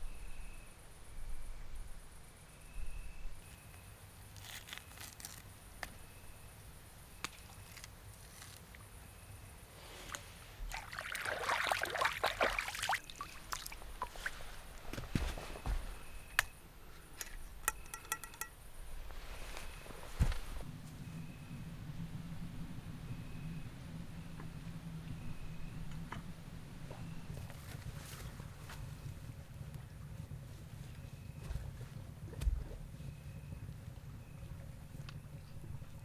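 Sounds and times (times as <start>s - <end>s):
liquid pouring and sloshing: 10.1s - 15.3s
small clicks and knocks: 17.2s - 18.6s.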